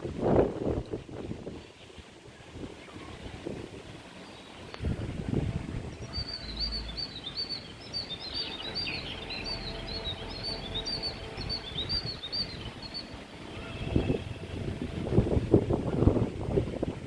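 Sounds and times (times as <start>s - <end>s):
wind rumble on microphone: 0.0s - 17.0s
bird chirping rapidly: 5.9s - 13.8s.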